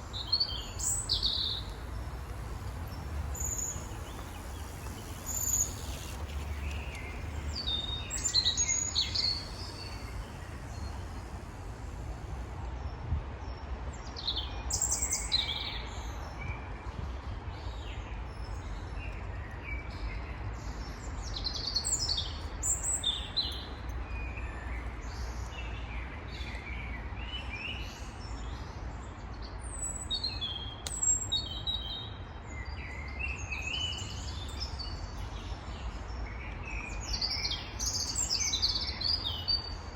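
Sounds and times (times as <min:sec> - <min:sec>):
songbirds chirping and whistling: 0:00.0 - 0:12.5, 0:29.6 - 0:39.8
steady low rumble: 0:00.0 - 0:14.0.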